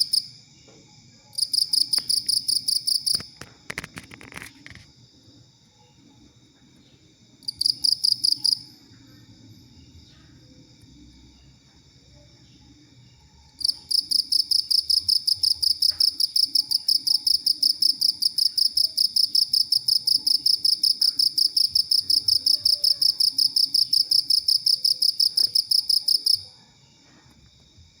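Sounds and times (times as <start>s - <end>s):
faint cricket song: 0.0s - 28.0s
loud pulsed insect trill: 7.4s - 10.0s, 13.1s - 26.4s.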